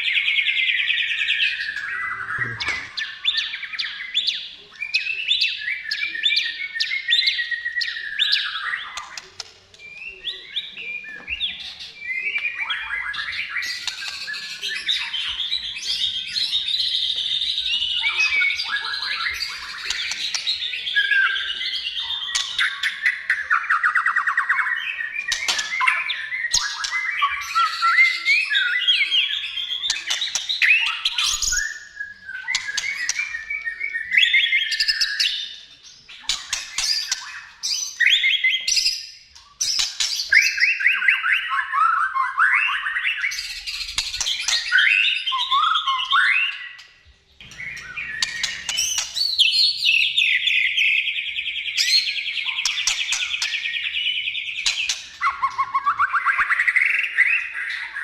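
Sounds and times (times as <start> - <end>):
songbird singing: 0.0 - 58.0.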